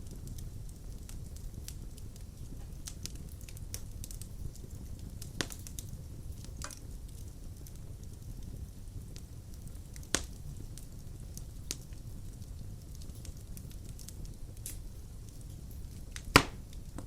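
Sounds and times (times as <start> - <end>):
sharp pops of fire: 0.0 - 17.0
wood fire crackling: 0.0 - 17.0.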